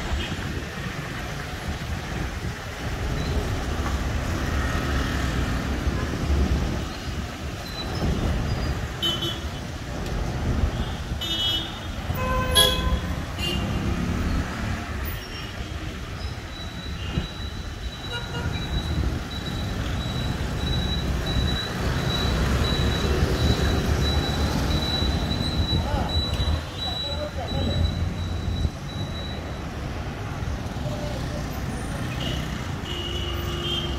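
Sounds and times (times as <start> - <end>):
engines rumbling: 0.0 - 33.9
vehicle horns honking: 9.0 - 9.6, 10.7 - 13.9, 18.1 - 18.8, 32.2 - 33.9.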